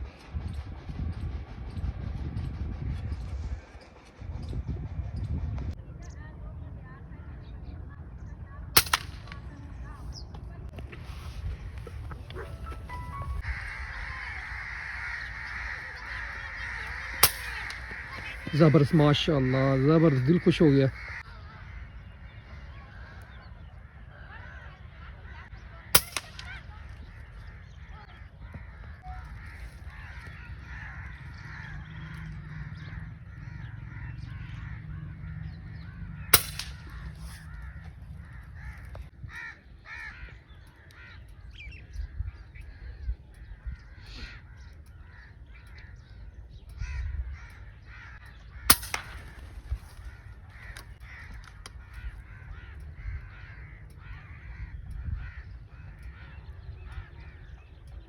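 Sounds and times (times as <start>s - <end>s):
birds calling: 2.5s - 58.0s
air rifle shots: 8.8s - 9.8s, 15.1s - 19.4s, 25.9s - 27.3s, 36.0s - 38.8s, 48.6s - 51.9s.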